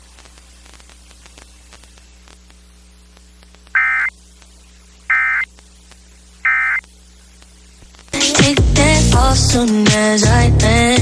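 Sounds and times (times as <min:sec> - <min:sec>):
low steady hum: 0:00.0 - 0:08.2
radio static crackle: 0:00.0 - 0:08.4
data tone bursts: 0:03.7 - 0:04.2, 0:05.1 - 0:05.5, 0:06.4 - 0:06.9.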